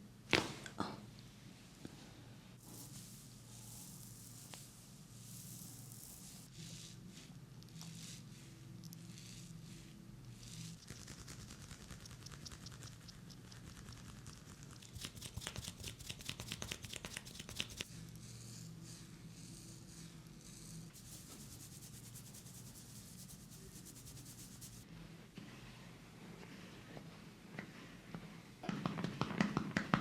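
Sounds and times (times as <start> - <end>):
fingers rubbing and scratching hair: 2.6 - 18.6, 19.4 - 24.9.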